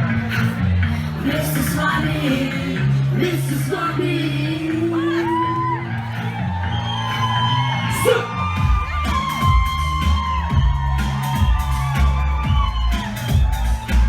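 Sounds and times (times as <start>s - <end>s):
crowd whooping and yelling: 0.0s - 14.0s
dance-pop music over sound system: 0.0s - 14.0s
kick-drum beat: 8.4s - 14.0s.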